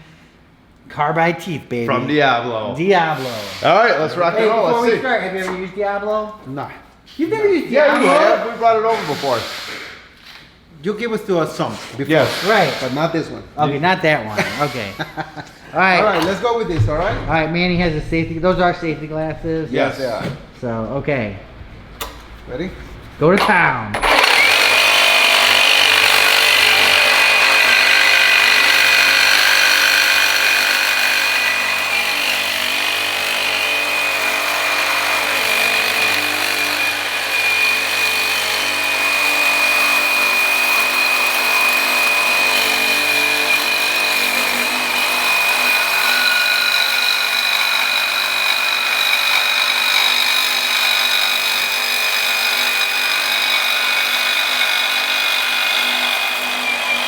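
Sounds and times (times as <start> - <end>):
reciprocating saw cutting steel: 7.9 - 10.1, 12.0 - 13.2, 14.2 - 15.2, 23.4 - 57.0.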